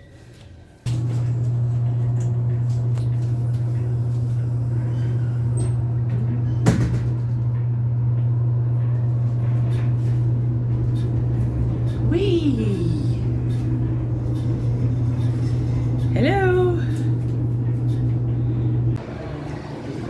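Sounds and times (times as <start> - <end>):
elevator low hum: 0.6 - 20.0.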